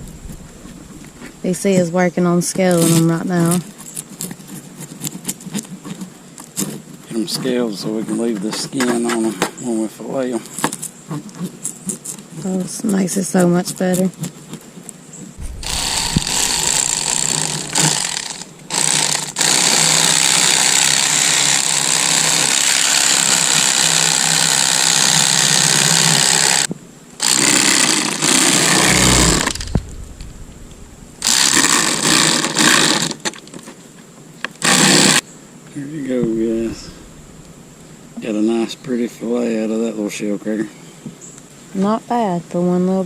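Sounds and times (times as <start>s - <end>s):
electric fillet knife running: 15.4s - 29.8s.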